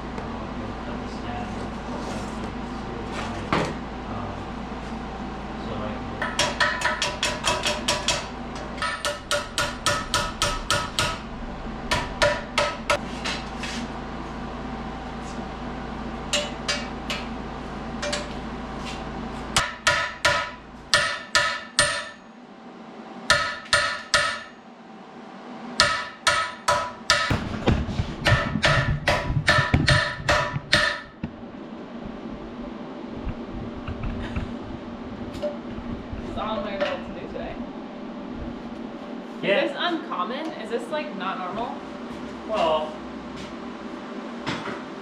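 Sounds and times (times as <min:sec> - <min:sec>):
hammer ringing on steel: 0:19.9 - 0:22.3.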